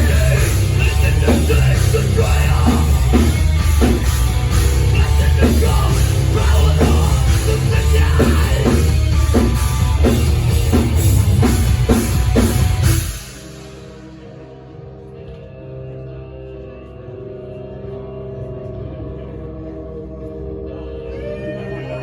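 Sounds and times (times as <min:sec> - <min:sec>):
heavy metal band playing: 0:00.0 - 0:15.0.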